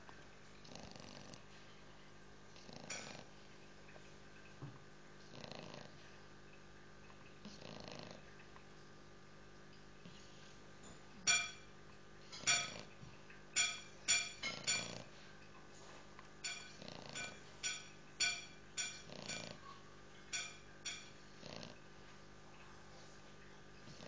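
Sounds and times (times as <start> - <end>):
puppy snoring softly: 0.5 - 1.6, 2.5 - 3.5, 5.2 - 6.1, 7.4 - 8.4, 14.6 - 15.3, 16.5 - 17.4, 19.0 - 19.8, 21.2 - 22.0.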